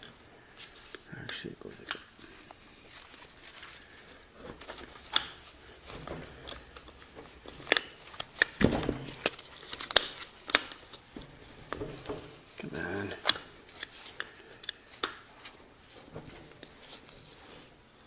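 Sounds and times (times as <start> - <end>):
tools and parts clicking: 6.2 - 8.6.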